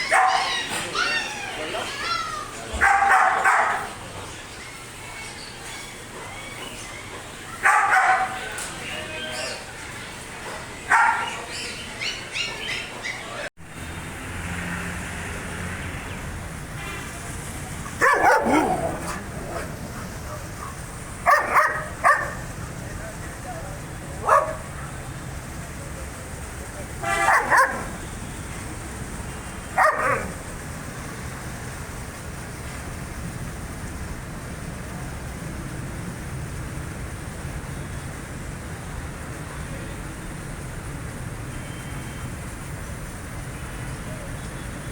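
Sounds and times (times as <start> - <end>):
dogs barking: 0.0 - 1.4, 2.7 - 4.0, 6.1 - 8.6, 10.9 - 13.4, 17.8 - 22.8, 24.1 - 25.1, 27.0 - 28.0, 29.7 - 30.4.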